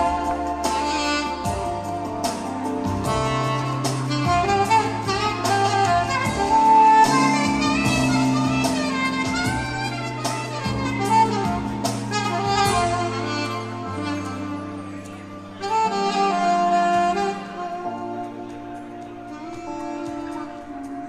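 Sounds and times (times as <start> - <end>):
backing track drums and bass: 0.0 - 14.6
saxophone playing jazzy melody: 0.0 - 21.0.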